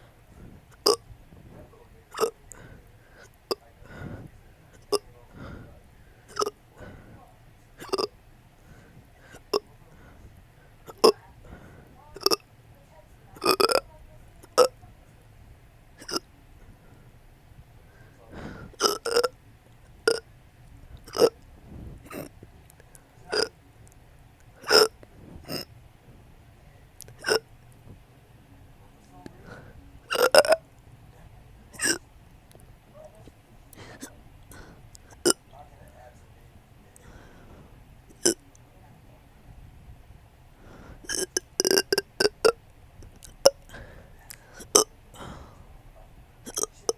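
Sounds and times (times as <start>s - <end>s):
person hiccup burping: 0.8s - 1.0s, 2.2s - 2.4s, 6.3s - 6.6s, 7.8s - 8.1s, 10.9s - 11.2s, 12.2s - 12.4s, 13.4s - 13.8s, 14.5s - 14.7s, 16.0s - 16.2s, 18.8s - 19.3s, 21.1s - 21.4s, 23.3s - 23.5s, 24.6s - 24.9s, 27.2s - 27.4s, 30.1s - 30.6s, 31.8s - 32.0s, 35.1s - 35.4s, 38.1s - 38.4s, 41.1s - 42.6s, 44.6s - 44.9s, 46.5s - 46.9s.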